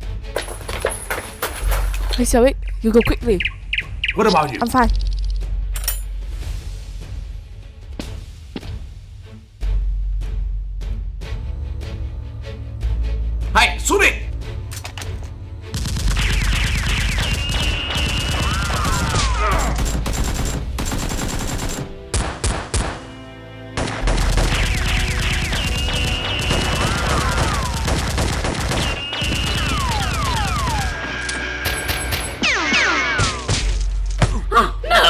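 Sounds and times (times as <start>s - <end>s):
background music: 0.0s - 35.0s
automatic gunfire bursts: 16.2s - 21.9s, 24.0s - 30.9s.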